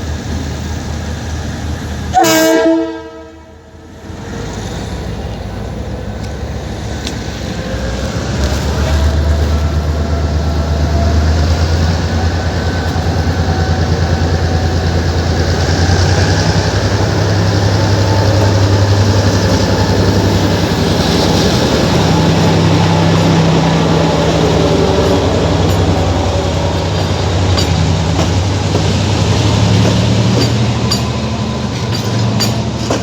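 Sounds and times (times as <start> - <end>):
train running on rails: 0.0 - 33.0.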